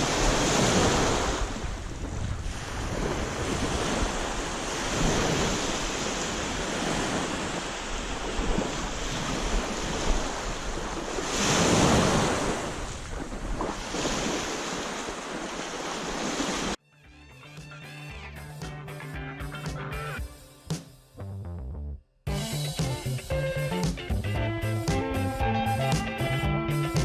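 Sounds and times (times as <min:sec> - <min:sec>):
wind buffeting microphone: 0:00.0 - 0:16.6
waves washing onto beach: 0:00.0 - 0:16.8.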